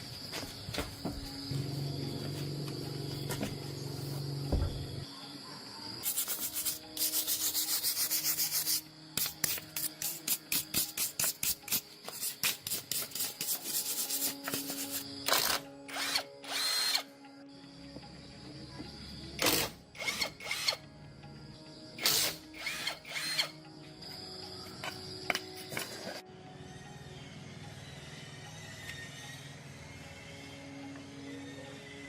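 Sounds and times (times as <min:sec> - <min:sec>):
hand tool scraping metal: 0:06.0 - 0:15.0
power tool bursts: 0:22.0 - 0:23.5.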